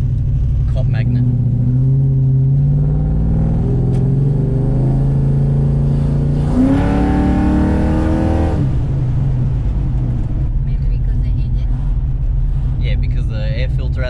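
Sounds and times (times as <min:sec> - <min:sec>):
engine revving: 0:00.0 - 0:09.7
car engine running: 0:00.0 - 0:14.0.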